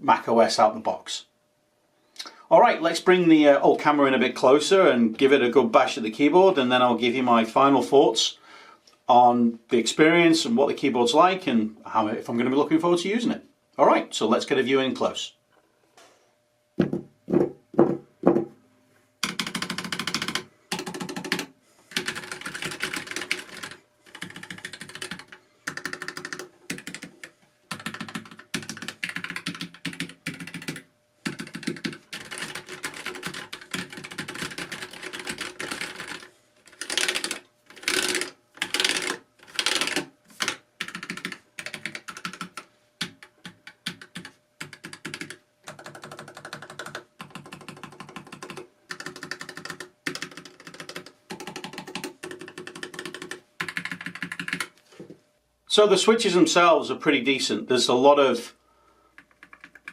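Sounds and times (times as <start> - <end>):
fast typing on mechanical keyboard: 19.2 - 54.7, 59.2 - 59.9.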